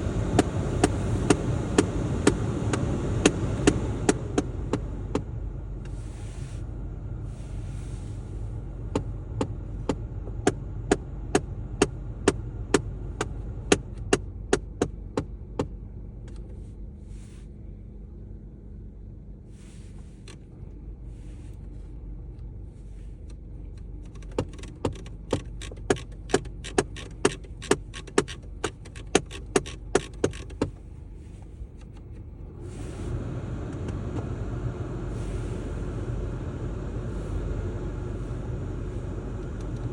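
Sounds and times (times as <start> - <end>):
steady low hum: 0.0 - 39.9
rapid knocking from car heater: 24.3 - 30.8.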